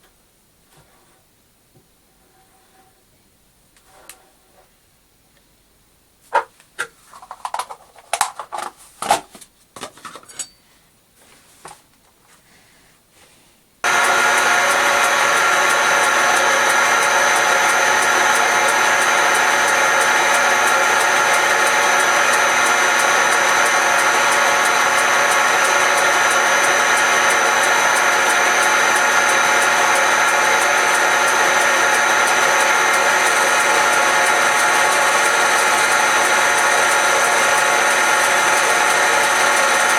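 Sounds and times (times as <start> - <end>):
metal lathe humming: 13.8 - 39.9.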